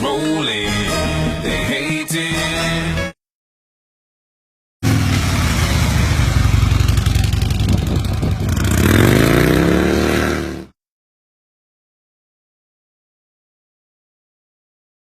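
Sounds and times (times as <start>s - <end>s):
motorcycle engine revving: 4.8s - 10.8s.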